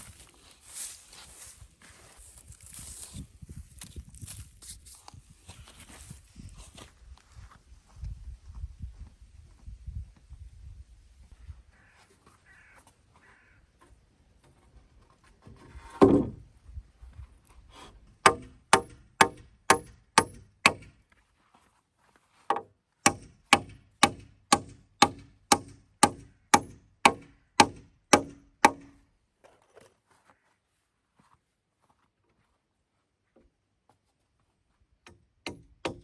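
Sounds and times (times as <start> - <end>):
tool striking wood: 16.0 - 16.4, 18.2 - 21.0, 22.5 - 29.0, 35.1 - 36.0.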